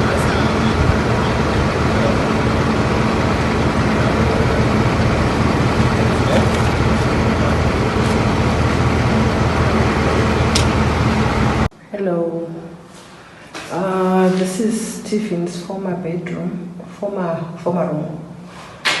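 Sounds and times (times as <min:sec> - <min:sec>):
car engine and road noise: 0:00.0 - 0:11.7
low hum: 0:00.0 - 0:11.8.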